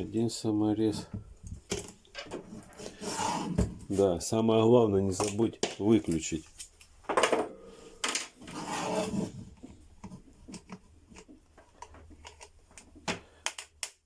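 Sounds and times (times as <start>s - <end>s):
plastic scraping rub: 2.4s - 4.0s, 8.4s - 9.8s.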